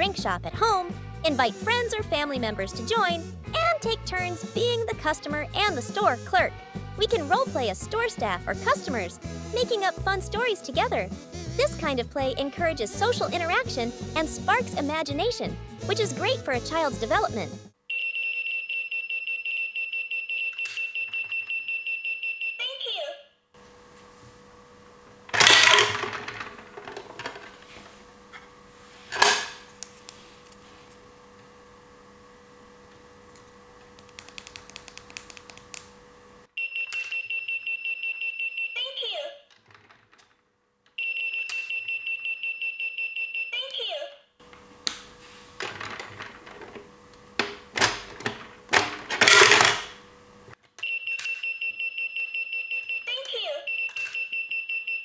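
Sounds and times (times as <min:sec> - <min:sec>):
plastic toy handling noise: 0:25.0 - 0:31.0, 0:39.5 - 0:40.5, 0:44.4 - 0:51.5
toy electronic beeping: 0:25.3 - 0:27.4, 0:50.8 - 0:55.0.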